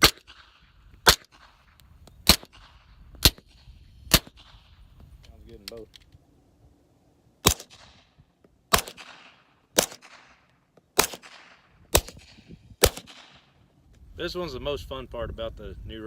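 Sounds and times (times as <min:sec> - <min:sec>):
suppressed pistol shots: 0:00.0 - 0:04.8, 0:07.4 - 0:13.6.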